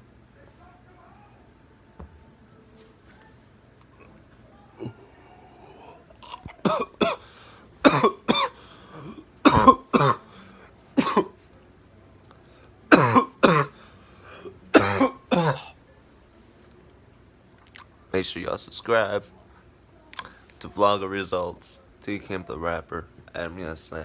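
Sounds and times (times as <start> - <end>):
man coughing hard: 6.6 - 10.3, 11.0 - 11.3, 12.9 - 13.8, 14.7 - 15.7.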